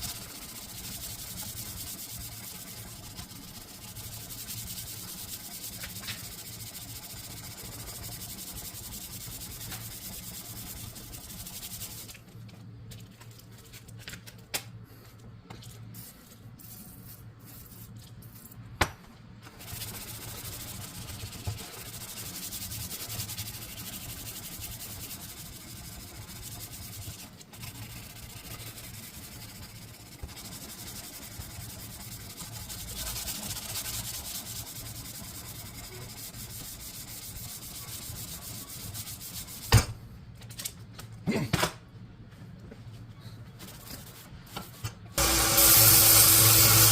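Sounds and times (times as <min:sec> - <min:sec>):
sanding a knife blade: 0:00.0 - 0:12.1, 0:19.6 - 0:39.7, 0:45.2 - 0:46.9.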